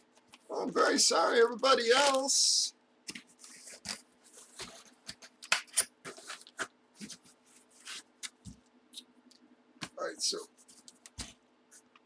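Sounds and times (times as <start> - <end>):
cards and packaging rustling: 1.6 - 2.4, 3.1 - 8.6.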